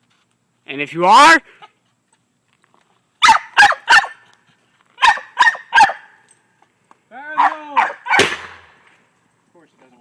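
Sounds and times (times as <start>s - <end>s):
small dog barking: 3.2s - 4.2s, 5.0s - 6.2s, 7.3s - 8.2s.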